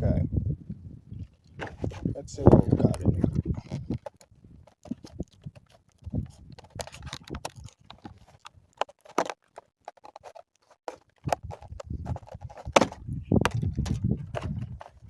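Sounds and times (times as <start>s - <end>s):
packaging being opened by hand: 3.4s - 13.0s.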